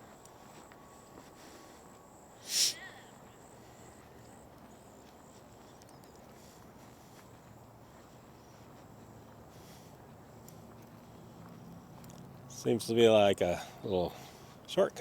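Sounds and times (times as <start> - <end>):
faint footfalls: 0.0 - 2.1, 3.1 - 13.0.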